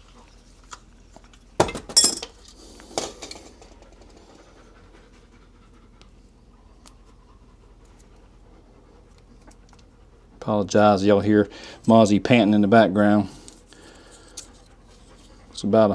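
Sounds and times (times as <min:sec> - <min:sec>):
dog panting: 0:03.6 - 0:15.9.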